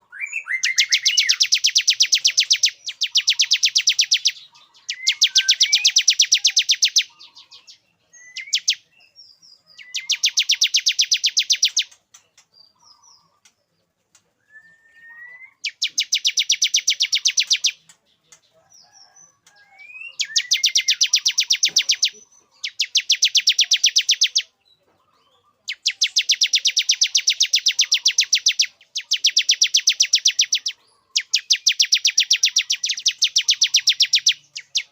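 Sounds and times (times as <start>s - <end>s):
bird singing rapid sharp notes: 0.0s - 34.9s
rising whistled bird notes: 0.1s - 11.9s, 14.4s - 17.8s, 19.0s - 24.5s.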